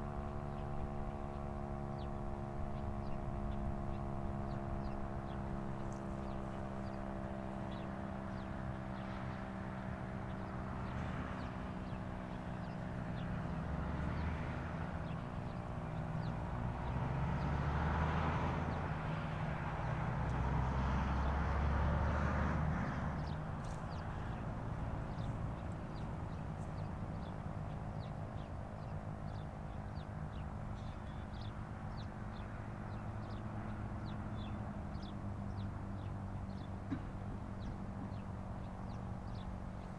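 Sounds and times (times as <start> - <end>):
vehicle passing: 13.0 - 27.8
birds chirping: 22.8 - 39.9.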